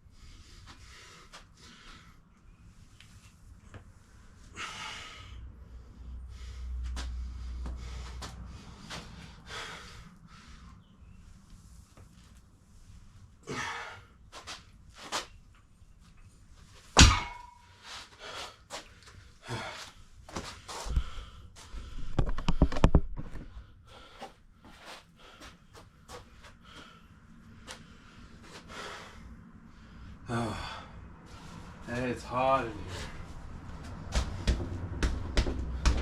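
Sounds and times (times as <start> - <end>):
person breathing: 4.5 - 11.2, 17.8 - 22.9, 23.5 - 31.8, 32.8 - 34.6
metal clank ringing: 17.0 - 17.8
workout equipment knocking: 34.5 - 36.0.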